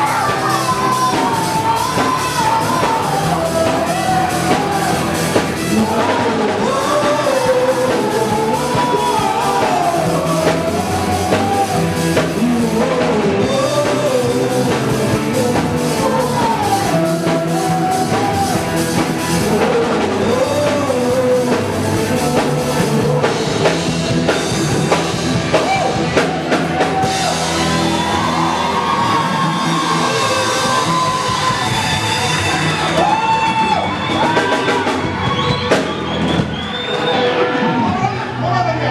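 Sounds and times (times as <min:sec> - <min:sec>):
person singing long notes: 0:00.0 - 0:23.9
drum kit: 0:00.0 - 0:37.8
guitar: 0:00.0 - 0:38.9.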